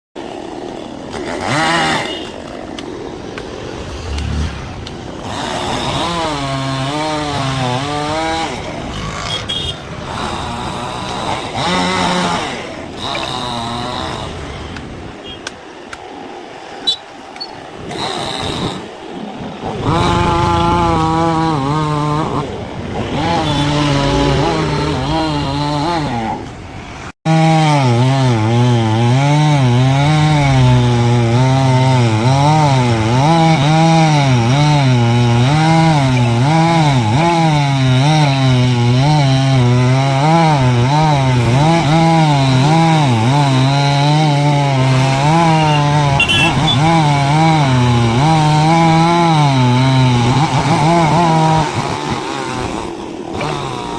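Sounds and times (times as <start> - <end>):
chainsaw cutting wood: 0.2 - 53.9.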